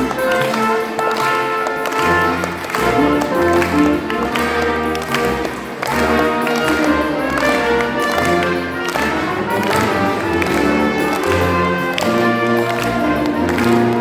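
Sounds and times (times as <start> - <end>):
brass ensemble playing: 0.0 - 14.0
tuba bass line: 0.0 - 14.0.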